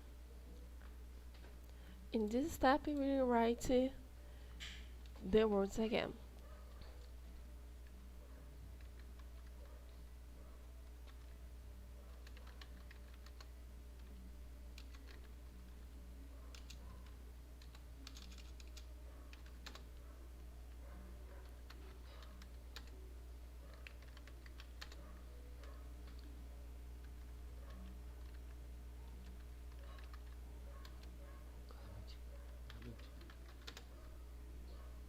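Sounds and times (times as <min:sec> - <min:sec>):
steady low hum: 0:00.0 - 0:35.0
typing on computer keyboard: 0:08.7 - 0:09.7, 0:10.9 - 0:11.4, 0:12.1 - 0:15.8, 0:16.5 - 0:20.0, 0:21.4 - 0:23.0, 0:23.6 - 0:25.0, 0:25.6 - 0:26.4, 0:27.0 - 0:31.2, 0:32.6 - 0:34.0.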